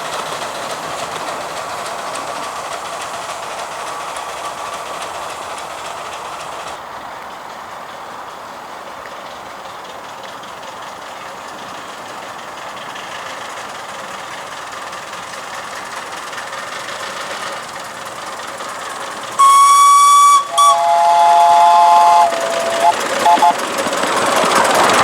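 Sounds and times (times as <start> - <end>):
miniature train rolling on track: 0.0 - 25.0
locomotive whistle: 19.3 - 23.8.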